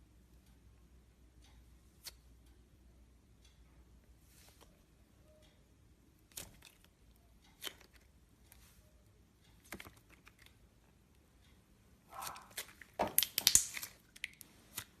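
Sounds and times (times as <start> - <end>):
sticky slime clicks and pops: 12.2 - 14.9.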